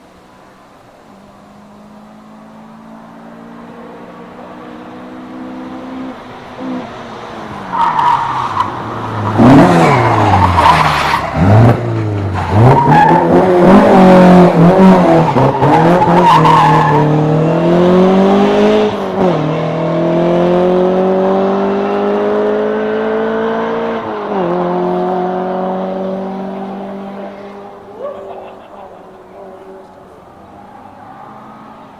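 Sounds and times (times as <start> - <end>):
rally car engine revving: 1.4 - 31.9
tyres squealing and skidding: 6.2 - 17.7, 25.9 - 31.9.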